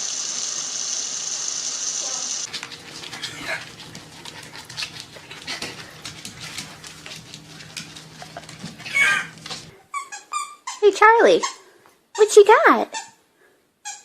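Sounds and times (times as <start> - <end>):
dog making soft noises: 2.4 - 9.8.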